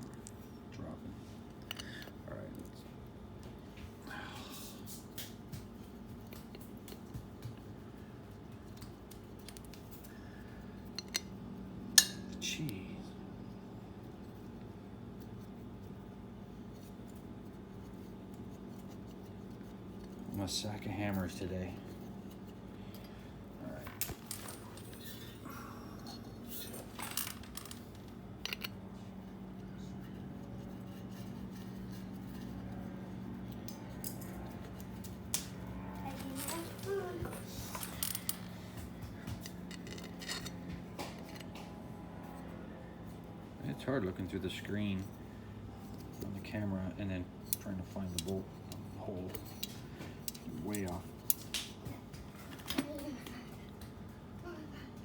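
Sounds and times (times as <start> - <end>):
faint steady hum: 0.0 - 55.0
metal bolts and tools clicking: 28.4 - 28.8.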